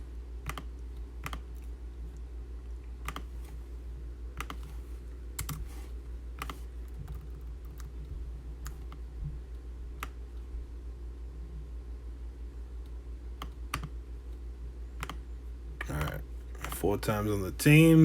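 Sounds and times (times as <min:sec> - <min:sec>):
steady low hum: 0:00.0 - 0:18.0
computer keyboard clicks: 0:00.4 - 0:01.6, 0:03.0 - 0:03.3, 0:04.4 - 0:04.6, 0:05.4 - 0:05.6, 0:13.4 - 0:14.0, 0:15.0 - 0:15.2.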